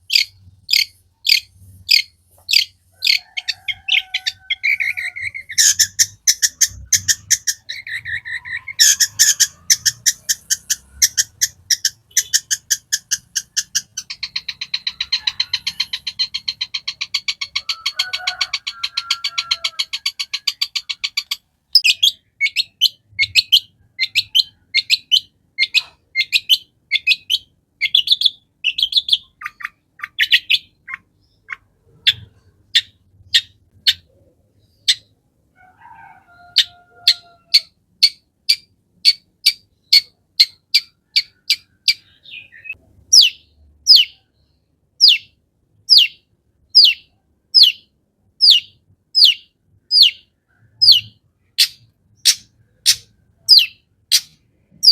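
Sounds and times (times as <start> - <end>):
shrike chirping: 0.0 - 34.1.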